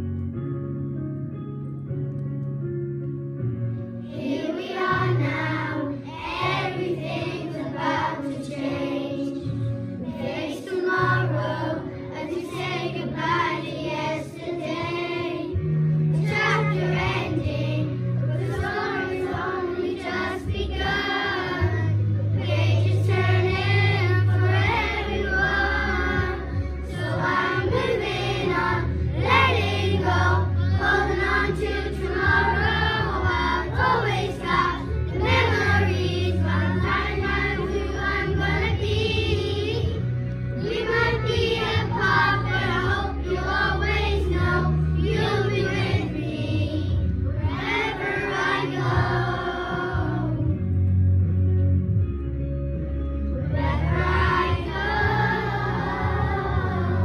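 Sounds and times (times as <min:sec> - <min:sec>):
children singing together: 0:04.2 - 0:40.0, 0:40.6 - 0:50.5, 0:53.5 - 0:57.0.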